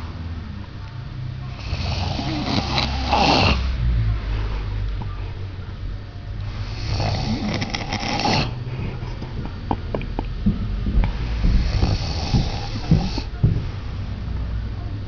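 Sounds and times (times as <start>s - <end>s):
rattling snoring: 1.5s - 3.8s, 6.5s - 8.7s, 11.0s - 13.4s.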